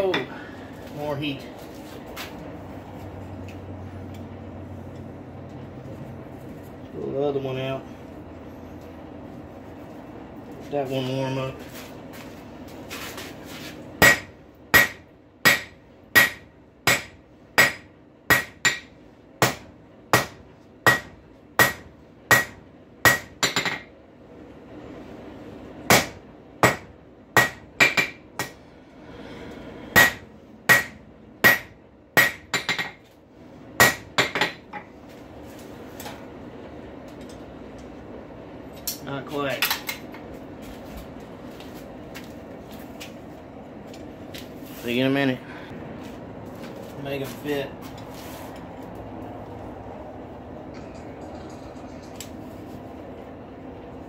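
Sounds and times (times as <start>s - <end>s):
hammer striking metal on an anvil: 14.0s - 23.9s, 25.9s - 28.6s, 29.9s - 33.0s, 33.8s - 34.9s.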